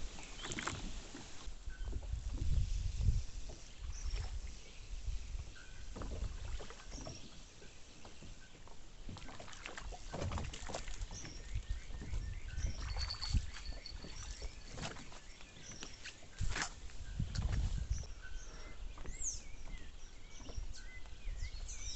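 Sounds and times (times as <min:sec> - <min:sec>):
paddle strokes and splashes: 0:00.0 - 0:21.9
knocks against hull: 0:09.1 - 0:13.2.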